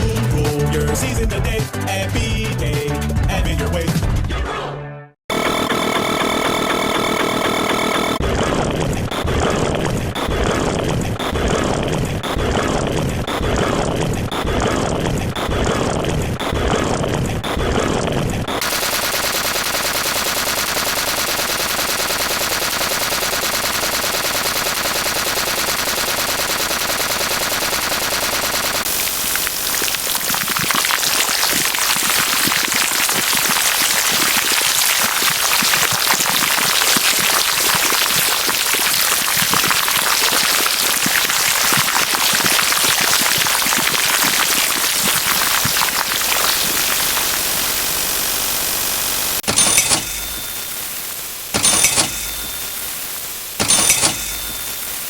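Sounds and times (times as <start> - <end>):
harsh crackle with shot-like cracks: 18.6 - 49.2.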